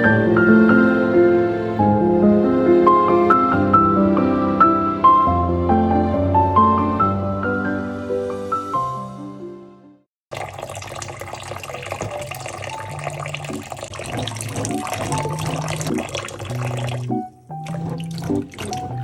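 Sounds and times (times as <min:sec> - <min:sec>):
tap water running into sink: 0:10.3 - 0:19.0
soft background music: 0:14.3 - 0:19.0.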